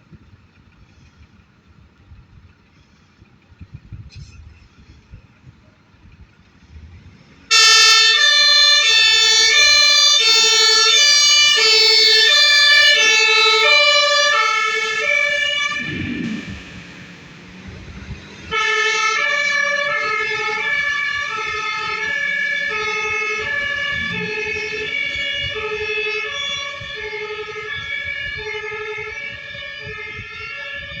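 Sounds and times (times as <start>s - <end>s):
engine and road noise: 0.0s - 31.0s
two-tone siren: 7.5s - 31.0s.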